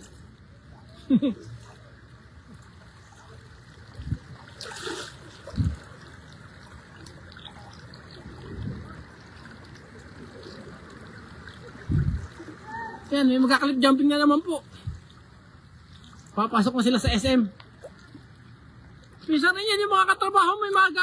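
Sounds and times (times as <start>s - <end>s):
floodwater rushing: 1.6s - 21.0s
water splash: 2.5s - 13.2s
dull low thumps: 11.8s - 12.4s.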